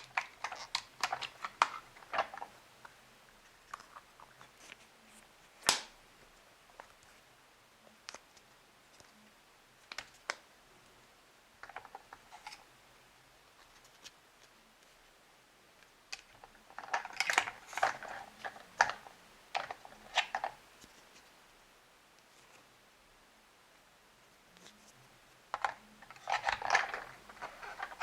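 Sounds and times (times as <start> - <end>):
plastic toy parts clicking: 0.0 - 2.5, 16.1 - 20.6, 25.5 - 28.0.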